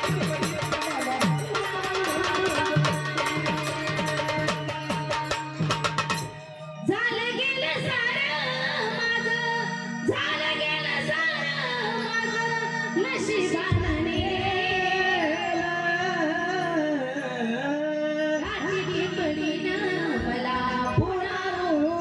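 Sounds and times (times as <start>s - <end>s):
instrumental backing track: 0.0s - 15.1s
woman singing: 0.0s - 22.0s.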